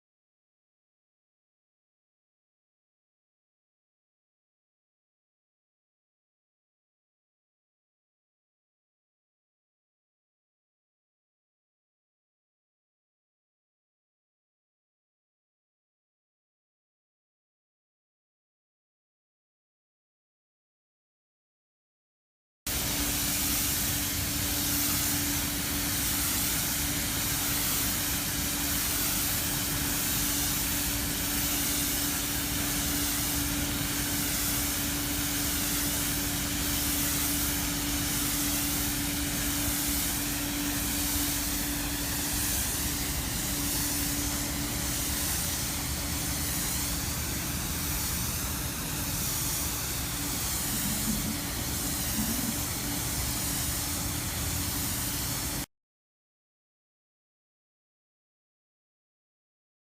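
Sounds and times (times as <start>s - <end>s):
machine hum: 22.7s - 54.8s
spraying hiss: 22.7s - 55.7s.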